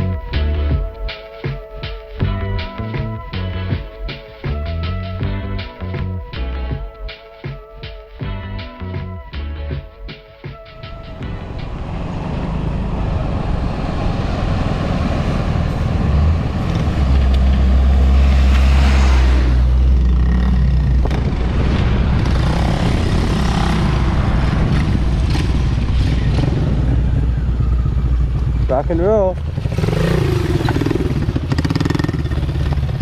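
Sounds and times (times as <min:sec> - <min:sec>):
motor scooter engine running: 0:19.9 - 0:33.0.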